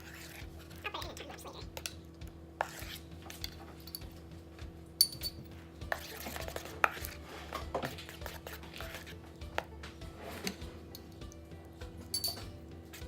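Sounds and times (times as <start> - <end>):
spoon stirring slime in a bowl: 0.0 - 4.3, 5.0 - 13.0
spoon clinking on bowl: 5.0 - 5.4, 12.1 - 12.5.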